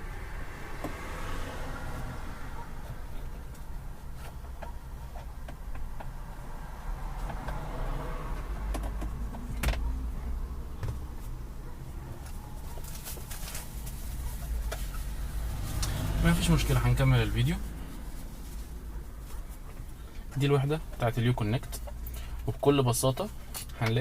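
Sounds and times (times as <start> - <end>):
handling clicks and knocks: 8.4 - 9.9.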